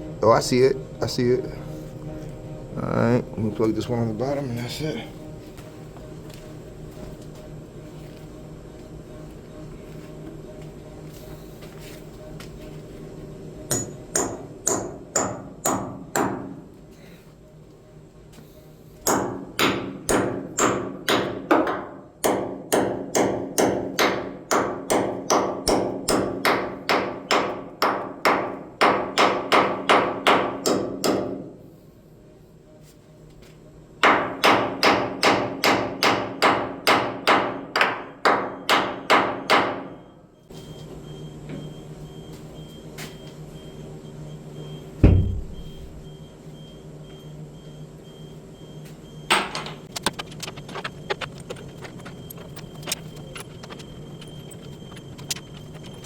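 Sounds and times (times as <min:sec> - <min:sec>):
steady low hum: 0:00.0 - 0:56.0
hammer striking metal: 0:13.7 - 0:16.6, 0:19.0 - 0:31.5, 0:34.0 - 0:40.0
heavy thump: 0:45.0 - 0:45.7.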